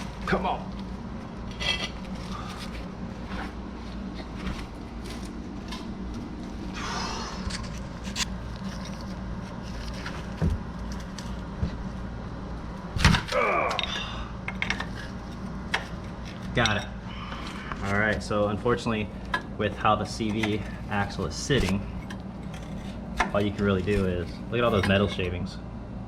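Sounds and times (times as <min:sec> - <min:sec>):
metal scraping grind: 0:01.3 - 0:05.9, 0:14.6 - 0:25.5.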